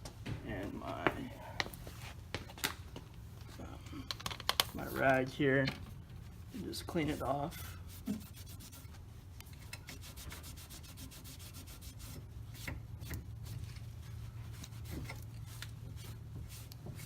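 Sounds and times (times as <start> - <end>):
rag rubbing on metal: 6.4 - 9.0, 9.6 - 17.0.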